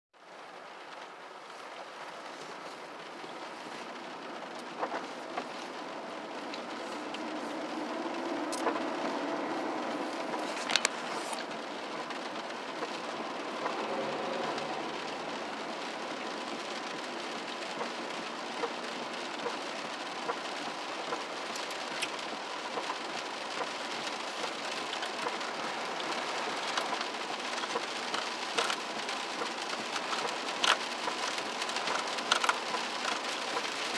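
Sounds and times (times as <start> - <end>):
steady rain falling: 0.2 - 33.9.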